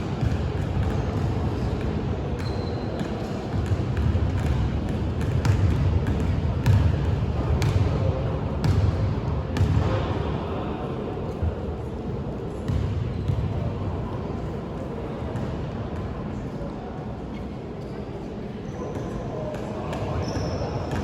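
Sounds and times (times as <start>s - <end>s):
basketball bouncing on a court: 0.0s - 10.1s, 12.7s - 13.7s.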